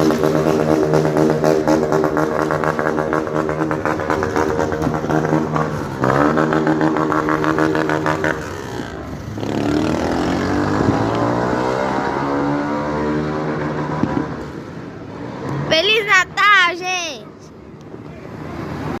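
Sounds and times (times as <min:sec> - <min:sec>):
motorcycle engine revving: 0:00.0 - 0:14.4.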